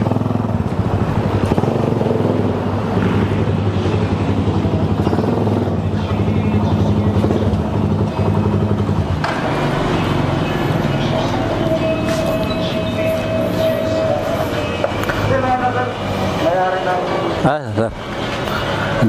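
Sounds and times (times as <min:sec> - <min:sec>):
motorcycle engine idling: 0:00.0 - 0:17.4.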